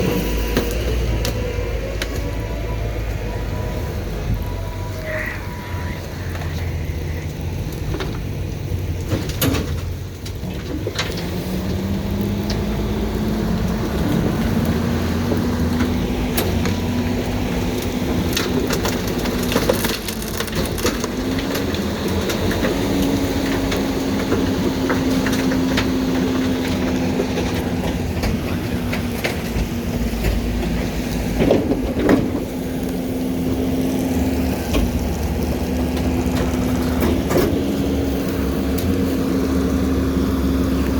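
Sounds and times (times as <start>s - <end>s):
garbage truck engine hum: 0.0s - 40.9s
waste cracking and snapping: 0.4s - 3.2s, 10.2s - 24.5s, 32.7s - 40.9s.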